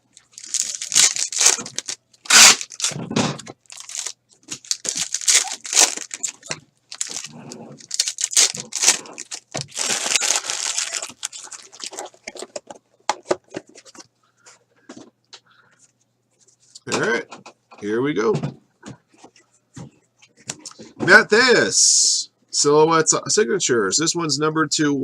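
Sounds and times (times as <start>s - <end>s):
packaging tearing and crumpling: 0.2s - 12.5s.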